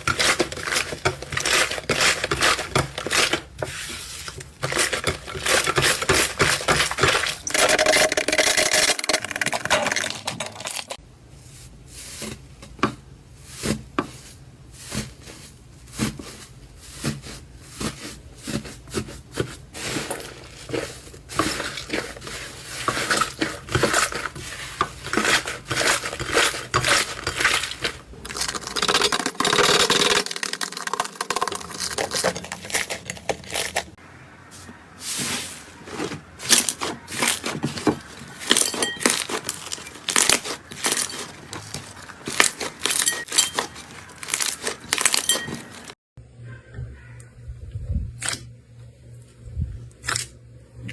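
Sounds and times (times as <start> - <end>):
slime crackling and popping: 36.5 - 45.9.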